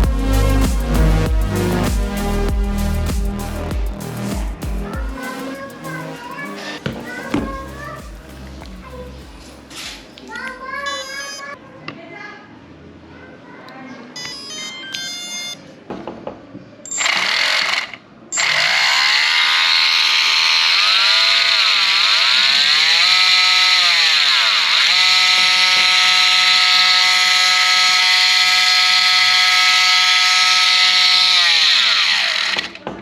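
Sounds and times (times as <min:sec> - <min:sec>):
electric motor high whine: 0:17.0 - 0:32.8.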